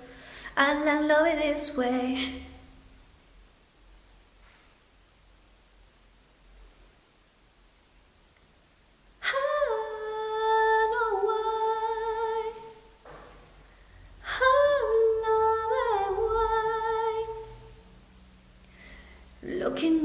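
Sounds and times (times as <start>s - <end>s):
person singing wordless phrases: 0.0s - 2.5s, 19.4s - 20.0s.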